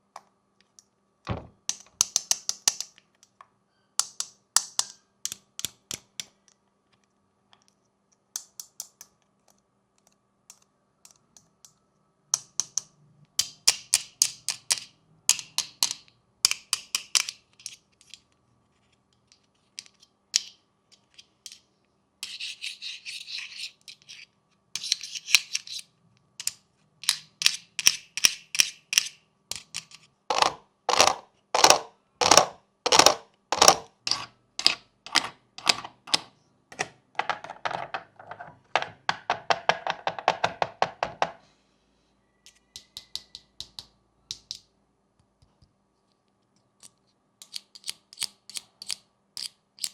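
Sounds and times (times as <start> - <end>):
rasping scratch: 22.2 - 25.8.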